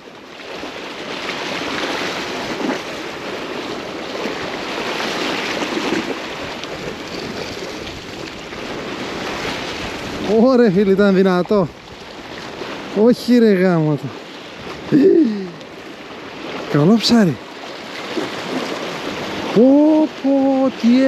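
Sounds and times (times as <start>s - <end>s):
surf washing over rocks: 0.0s - 21.0s
wind buffeting microphone: 1.5s - 13.1s.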